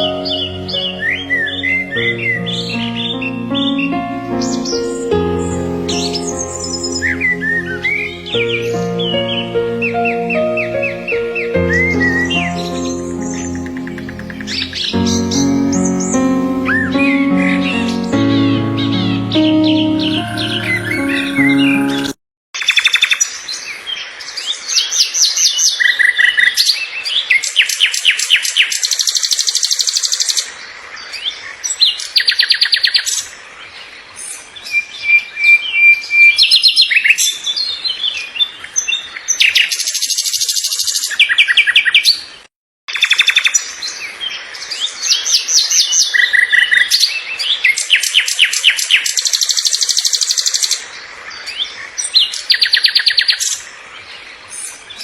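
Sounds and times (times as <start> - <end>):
birds chirping and trilling: 0.0 - 22.1.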